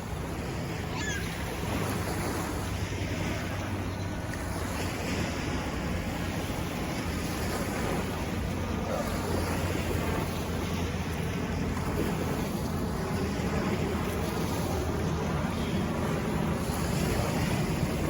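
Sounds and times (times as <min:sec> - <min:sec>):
surf washing against shore: 0:00.0 - 0:18.0
wind rumbling on microphone: 0:00.0 - 0:18.0.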